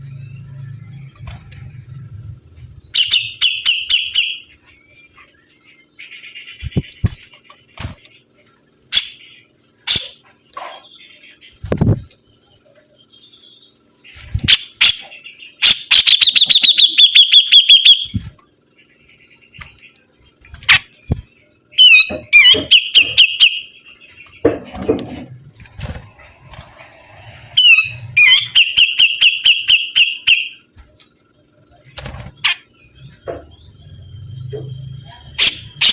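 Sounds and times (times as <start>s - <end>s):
bird singing rapid high notes: 0.0s - 8.2s, 10.8s - 24.5s, 27.5s - 30.8s.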